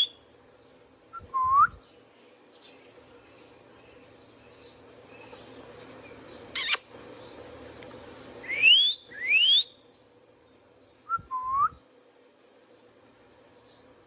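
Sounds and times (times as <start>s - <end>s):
parrot screeching and whistling: 6.6s - 6.8s.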